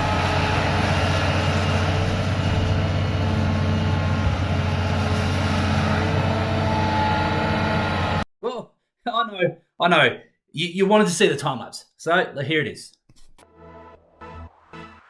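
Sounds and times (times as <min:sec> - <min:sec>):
excavator diesel engine drone: 0:00.0 - 0:08.2.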